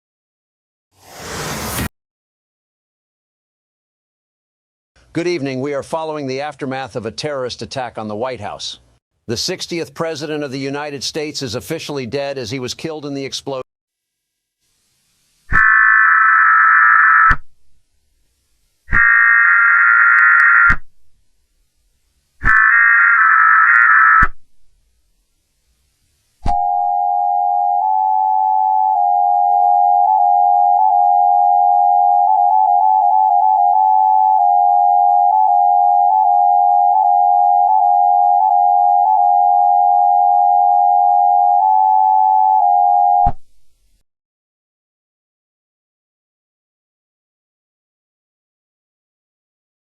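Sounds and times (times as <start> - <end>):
steady electronic tone: 26.4 - 43.3.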